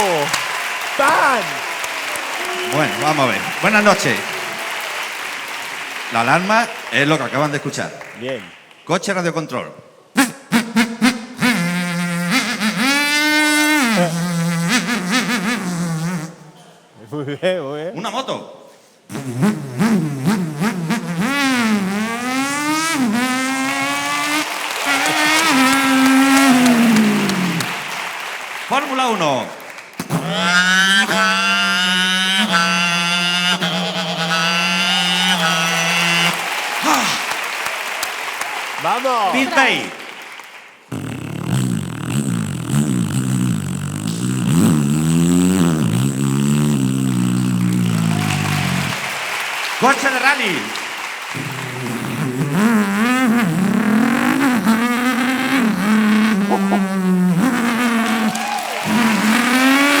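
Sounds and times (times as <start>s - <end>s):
man imitating a racing car engine: 1.0s - 1.6s, 2.4s - 4.3s, 10.2s - 16.2s, 19.1s - 27.8s, 30.1s - 37.2s, 40.9s - 49.0s, 51.4s - 58.3s.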